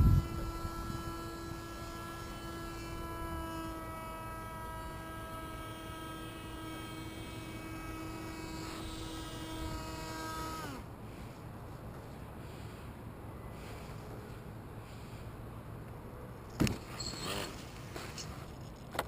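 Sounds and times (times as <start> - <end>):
motor humming: 0.0 - 11.5.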